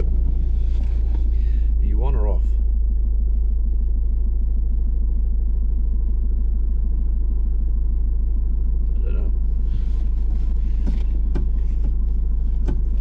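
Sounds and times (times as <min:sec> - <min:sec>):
car engine rumble inside cabin: 0:00.0 - 0:13.0.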